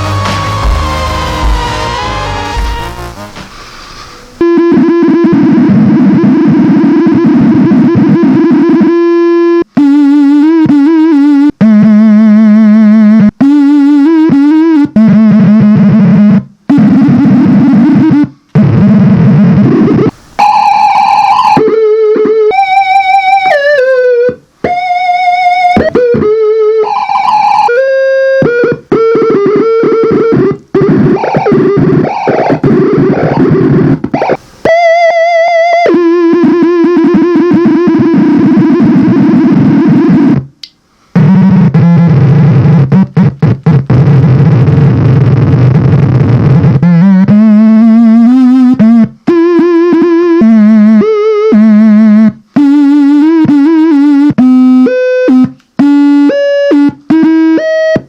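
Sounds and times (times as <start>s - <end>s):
harsh noisy distortion: 0.0s - 8.5s, 15.3s - 21.7s, 22.6s - 40.5s, 41.2s - 47.4s
buzzy synthesizer tones: 0.0s - 40.5s, 41.2s - 58.0s.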